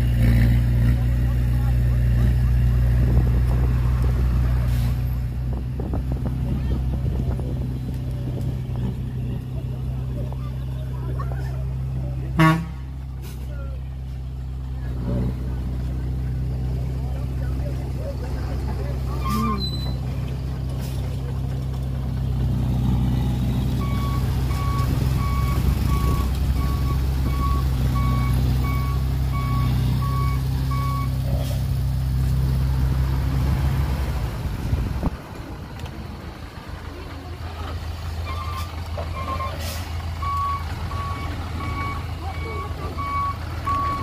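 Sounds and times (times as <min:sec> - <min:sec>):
diesel truck engine running: 0:00.0 - 0:44.0
reversing alarm beeping: 0:23.8 - 0:31.2, 0:40.2 - 0:44.0.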